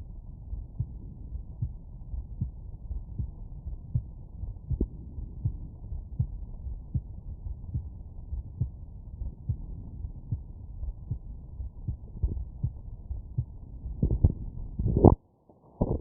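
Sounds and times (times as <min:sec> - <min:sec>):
steady low rumble: 0:00.0 - 0:15.2, 0:15.8 - 0:16.0
heartbeat thuds: 0:00.5 - 0:15.2.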